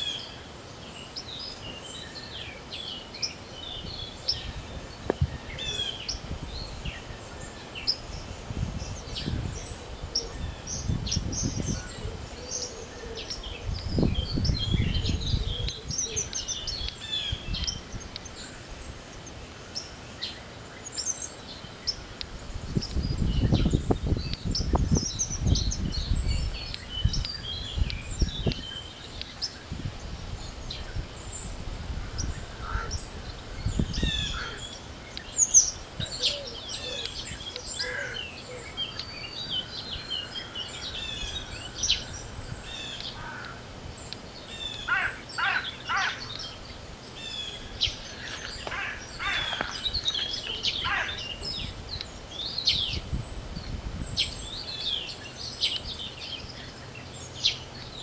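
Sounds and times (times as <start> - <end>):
birds chirping and calling: 1.1 - 58.0
wind rumbling on microphone: 3.4 - 19.6, 21.4 - 45.1, 46.1 - 58.0
downward-sweeping bird calls: 30.5 - 53.2.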